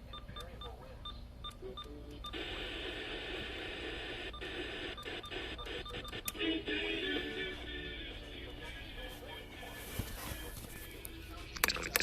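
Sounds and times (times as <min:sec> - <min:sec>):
radio hiss: 0:02.3 - 0:06.9
music: 0:06.3 - 0:11.5.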